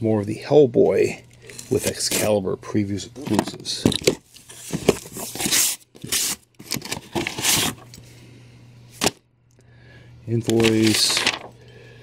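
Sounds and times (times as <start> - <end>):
cardboard tearing and rustling: 3.2 - 7.9, 10.5 - 11.5.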